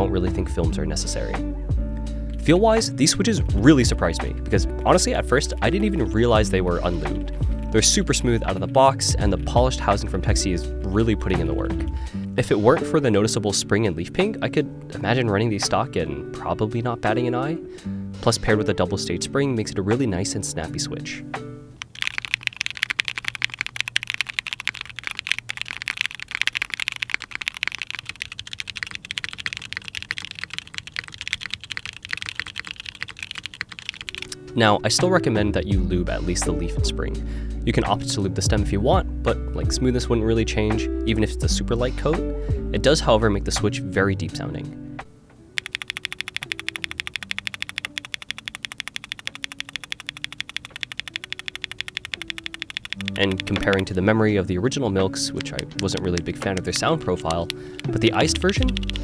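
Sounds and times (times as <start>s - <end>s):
mechanical keyboard typing: 21.7s - 34.5s, 45.6s - 54.1s, 55.3s - 59.0s.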